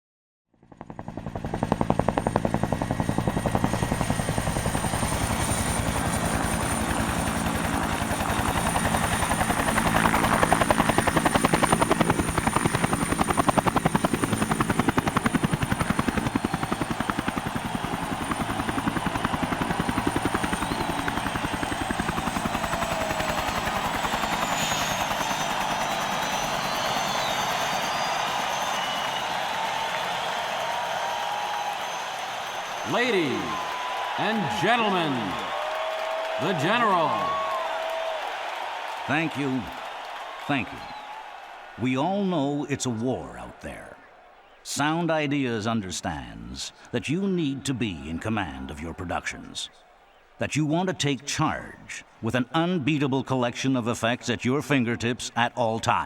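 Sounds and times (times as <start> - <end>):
helicopter rotor blades chopping: 0.6 - 42.2
high turbine whine: 2.7 - 35.4.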